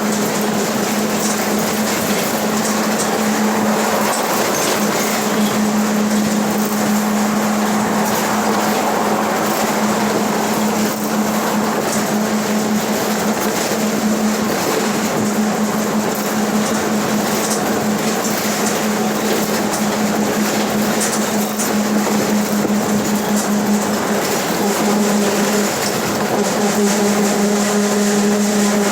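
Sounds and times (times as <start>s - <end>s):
bus differential droning: 0.0s - 28.9s
road and drivetrain noise: 0.0s - 28.9s.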